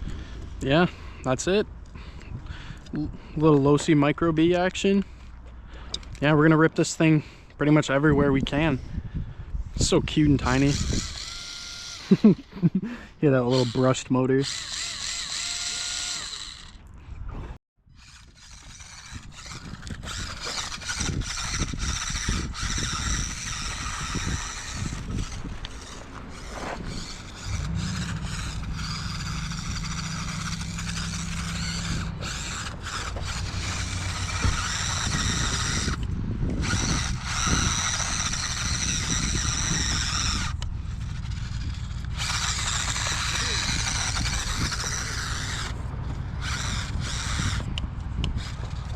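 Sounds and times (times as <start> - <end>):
toy car motor whining: 9.7 - 16.9, 17.9 - 48.9.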